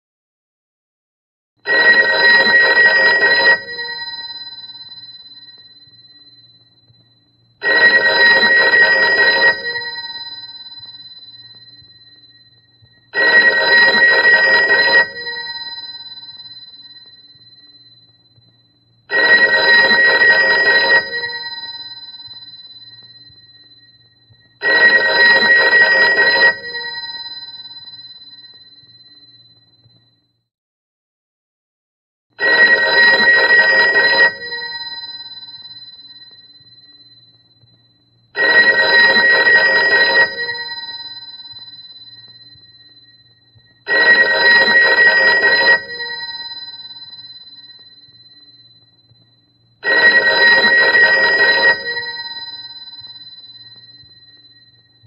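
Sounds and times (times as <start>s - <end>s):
telephone bell ringing: 1.7s - 6.2s, 7.6s - 12.1s, 13.2s - 17.8s, 19.1s - 23.7s, 24.6s - 29.3s, 32.4s - 36.9s, 38.4s - 42.4s, 43.9s - 48.4s, 49.8s - 54.6s.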